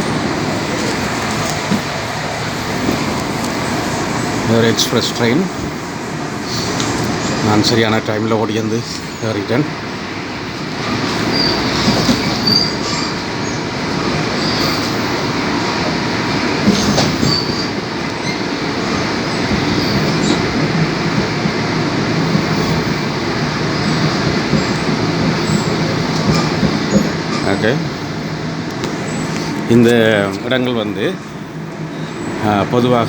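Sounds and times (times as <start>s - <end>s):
train wheels rumbling on rails: 0.0s - 33.0s
high wheel squeals: 10.8s - 15.8s, 16.6s - 20.6s, 23.6s - 28.1s.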